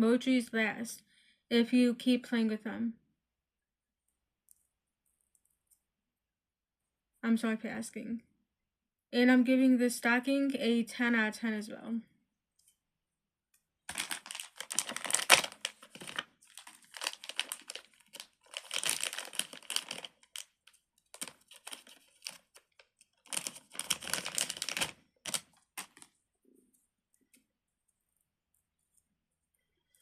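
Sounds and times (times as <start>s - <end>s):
plastic packaging crinkling: 13.9s - 26.2s.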